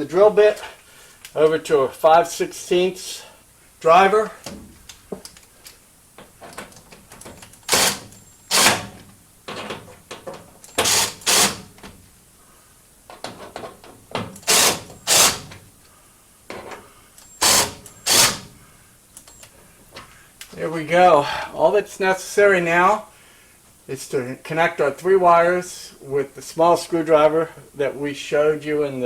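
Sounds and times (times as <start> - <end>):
drill driving screws into sheet metal: 7.6 - 9.0, 10.7 - 11.7, 14.4 - 15.6, 17.4 - 18.6.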